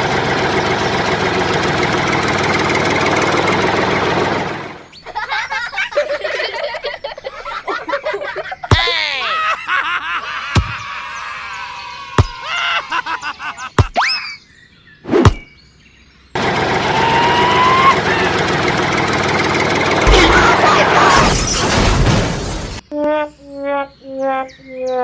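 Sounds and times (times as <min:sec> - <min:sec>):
cartoon springy boings: 0:10.5 - 0:10.8, 0:13.8 - 0:14.4
sharp cartoon hits: 0:10.6 - 0:10.8, 0:15.1 - 0:15.5, 0:20.0 - 0:22.7.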